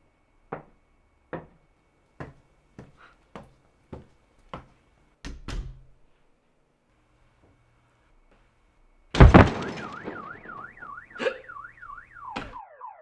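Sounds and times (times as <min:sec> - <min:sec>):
heavy thud: 0:09.2 - 0:10.9.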